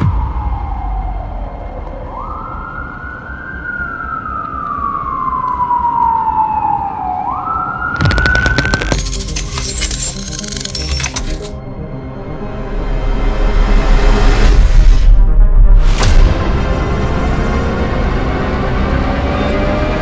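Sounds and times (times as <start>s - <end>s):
low rumble: 0.0s - 3.3s
emergency vehicle siren wailing: 0.0s - 9.0s.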